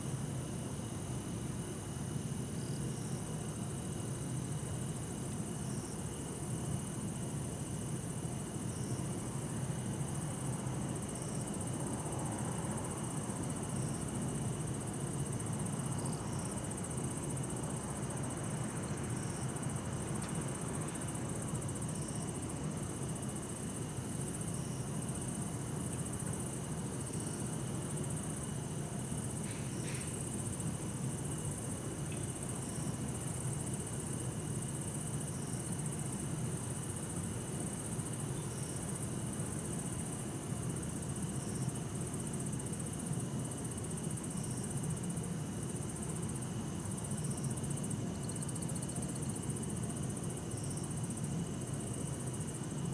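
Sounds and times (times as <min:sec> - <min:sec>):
crickets calling: 0:00.0 - 0:52.9
high-pitched insect trilling: 0:13.0 - 0:30.6.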